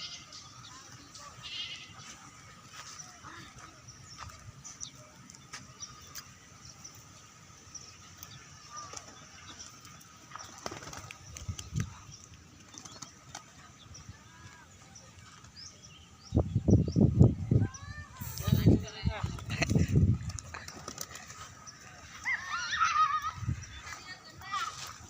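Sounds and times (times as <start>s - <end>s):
pigeon wings flapping: 10.3s - 13.6s, 19.4s - 21.6s.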